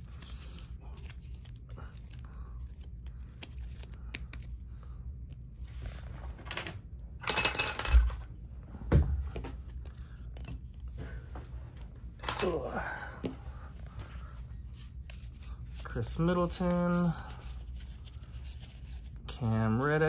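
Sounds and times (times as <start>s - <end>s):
cards and wrappers rustling: 0.0s - 4.9s, 13.9s - 20.0s.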